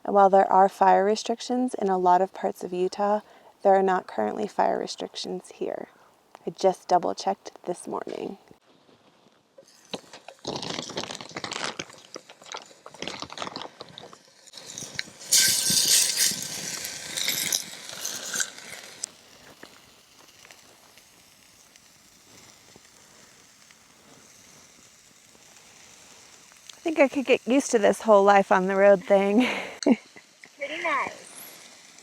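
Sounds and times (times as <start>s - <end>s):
campfire crackling and clicking: 9.2s - 32.0s
steak sizzling in a pan: 9.6s - 32.0s.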